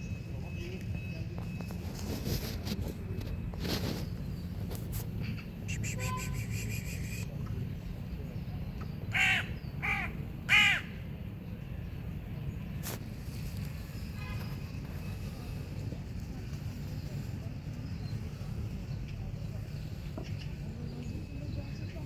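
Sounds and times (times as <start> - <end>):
crow cawing: 9.1 - 11.0.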